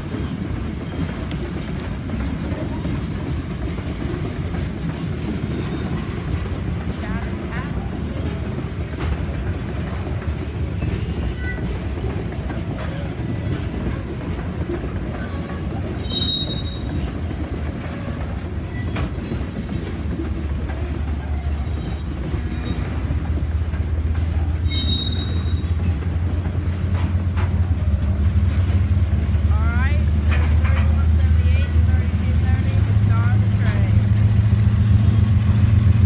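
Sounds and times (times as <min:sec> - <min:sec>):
freight train rumbling past: 0:00.0 - 0:36.0
locomotive engine: 0:00.0 - 0:36.0
wheels clicking over rail joints: 0:00.0 - 0:36.0
train wheels squealing: 0:15.2 - 0:17.2, 0:17.9 - 0:20.0, 0:21.4 - 0:23.1, 0:24.4 - 0:26.2, 0:34.8 - 0:36.0.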